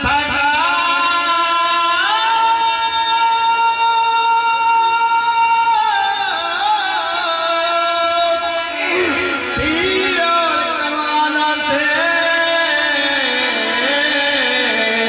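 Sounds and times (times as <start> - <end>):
elderly man singing long note: 9.7 - 15.0.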